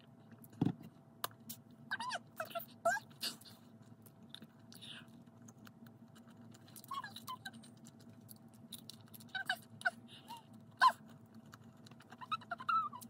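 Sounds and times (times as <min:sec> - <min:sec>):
faint steady hum: 0:00.0 - 0:13.0
person chewing: 0:03.4 - 0:12.2.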